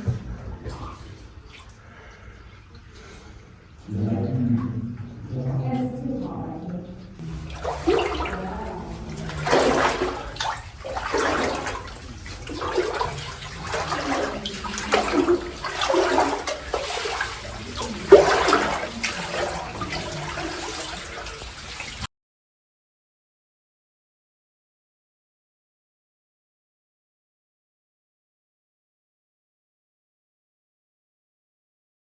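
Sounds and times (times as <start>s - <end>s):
water sloshing and splashing: 0.0s - 22.1s.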